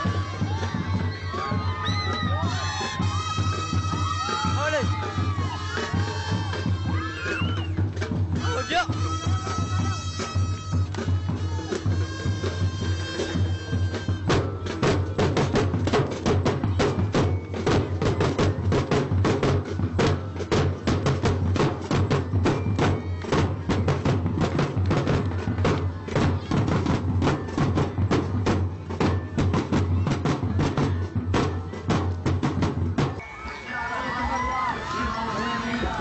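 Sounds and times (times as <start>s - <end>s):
wind instruments holding notes: 0.0s - 14.7s
fast drum cadence: 0.0s - 33.3s.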